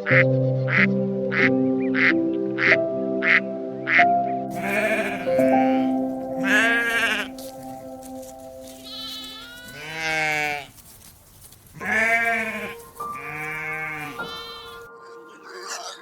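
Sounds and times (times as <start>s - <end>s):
background music: 0.0s - 10.2s, 11.8s - 16.0s
farm animal bleating: 2.0s - 16.0s.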